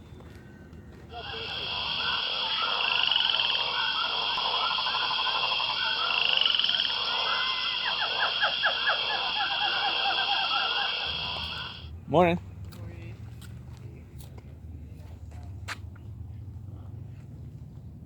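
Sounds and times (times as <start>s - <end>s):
chirping and croaking calls: 1.1s - 11.9s
sharp animal calls: 1.1s - 11.9s
steady high trill: 1.1s - 11.9s.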